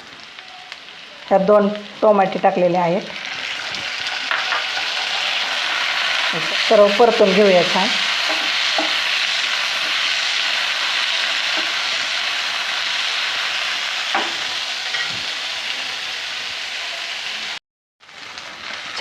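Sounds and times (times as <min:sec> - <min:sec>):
food sizzling in oil: 0:00.0 - 0:19.0
spoon knocking against pan: 0:08.2 - 0:09.0.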